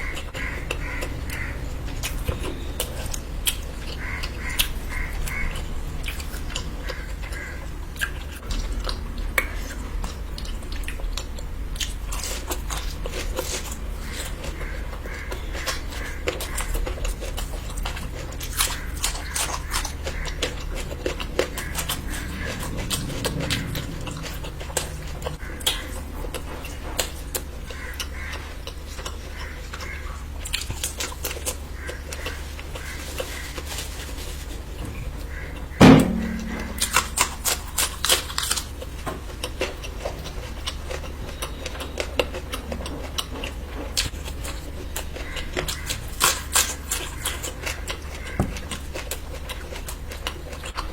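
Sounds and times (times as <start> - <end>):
wet chewing: 0.0 - 35.8, 36.7 - 50.9
steady low hum: 34.7 - 39.0
loud knock: 35.8 - 37.3.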